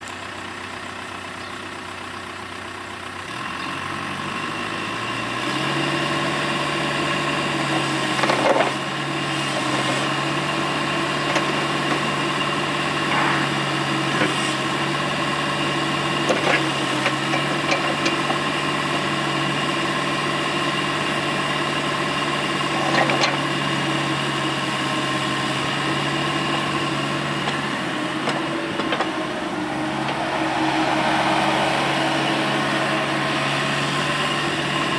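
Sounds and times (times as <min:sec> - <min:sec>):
diesel engine running: 0:00.0 - 0:34.9
short clunks: 0:27.4 - 0:29.3.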